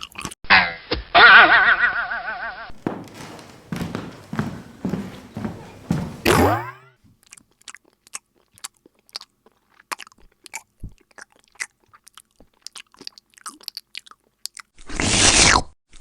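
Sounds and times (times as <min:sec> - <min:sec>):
crunching and chewing: 0:00.0 - 0:00.4, 0:07.2 - 0:14.7.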